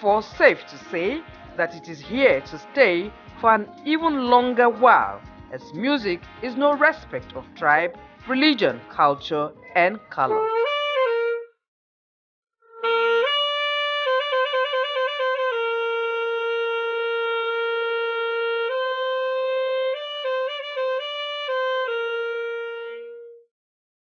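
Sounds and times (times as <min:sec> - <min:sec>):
solo wind instrument melody: 0:00.0 - 0:11.6, 0:12.6 - 0:23.5.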